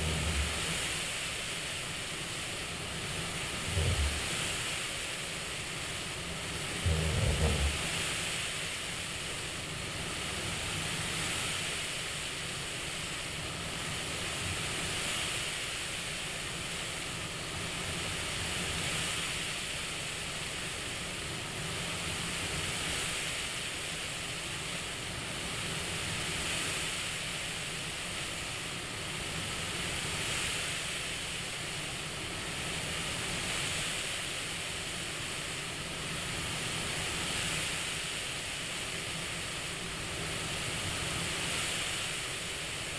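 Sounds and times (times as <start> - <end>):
cpap machine air hiss: 0.0 - 24.2.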